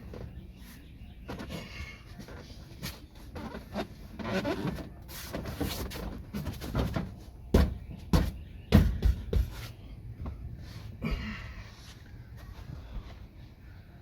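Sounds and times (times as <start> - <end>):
scraping and rustling of car parts: 0.0 - 7.9.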